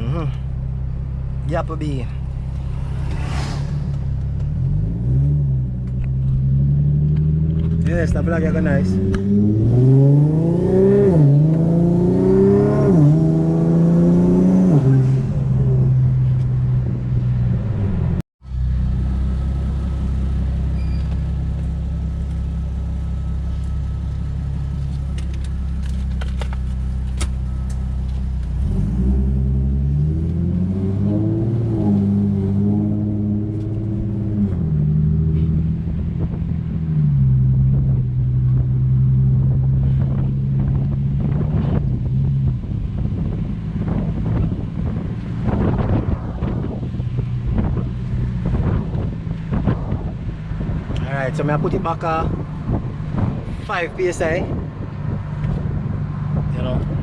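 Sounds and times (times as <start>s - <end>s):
car engine revving through gears: 2.5s - 16.7s, 28.5s - 42.2s.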